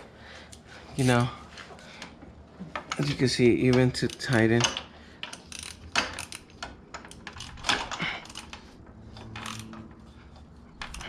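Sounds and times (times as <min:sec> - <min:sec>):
ratchet wrench clicking: 0:04.0 - 0:09.8.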